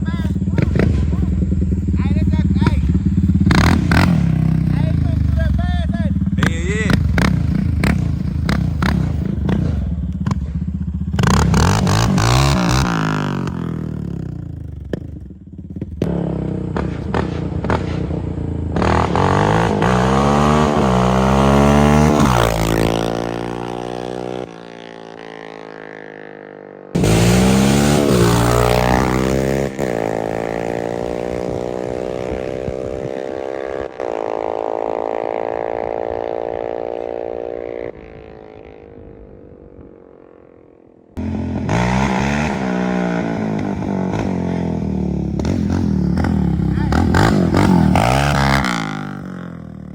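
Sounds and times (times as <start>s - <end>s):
sharp exhaust cracks: 0.0s - 13.8s
atv engine accelerating: 0.0s - 40.6s, 41.2s - 49.9s.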